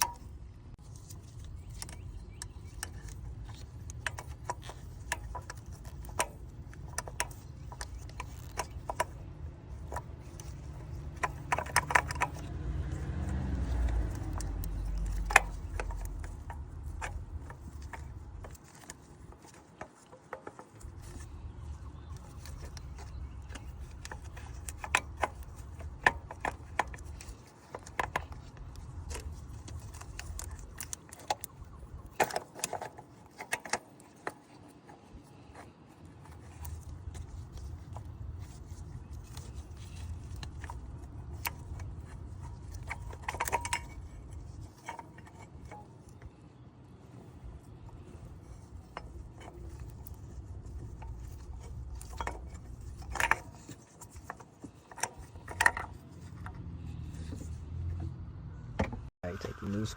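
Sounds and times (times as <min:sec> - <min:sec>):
metallic clicks of hand tools: 0:01.7 - 0:21.3.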